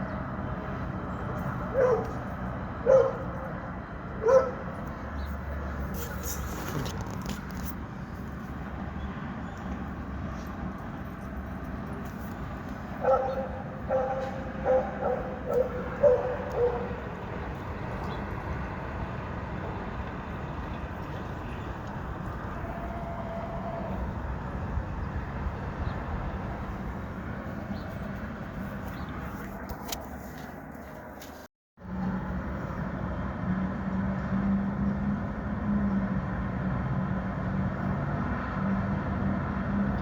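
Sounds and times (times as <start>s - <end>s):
city street traffic hum: 0.0s - 40.0s
dog barking: 1.7s - 2.2s, 2.8s - 3.4s, 4.2s - 4.6s, 13.0s - 17.0s.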